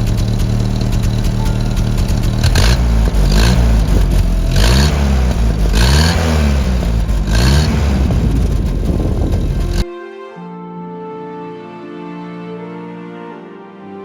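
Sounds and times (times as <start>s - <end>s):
engine idling and revving: 0.0s - 9.8s.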